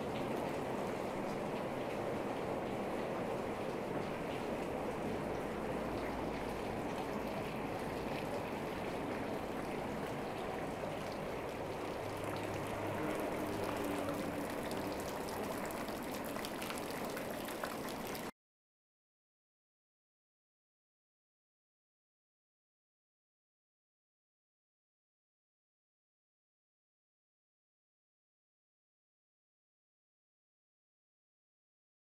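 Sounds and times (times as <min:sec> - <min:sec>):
falling water pattering: 0:00.0 - 0:18.3.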